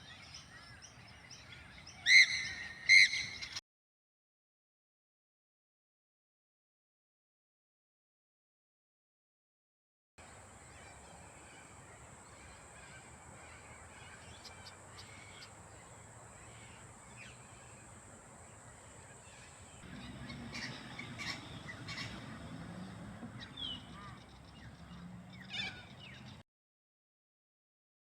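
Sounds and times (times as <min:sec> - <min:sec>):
birds calling: 0:00.0 - 0:03.6, 0:10.2 - 0:26.4.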